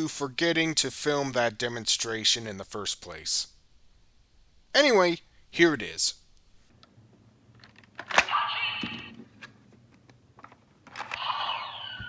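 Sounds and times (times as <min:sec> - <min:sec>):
electronic toy sound effects: 0:08.3 - 0:09.1, 0:11.1 - 0:12.0.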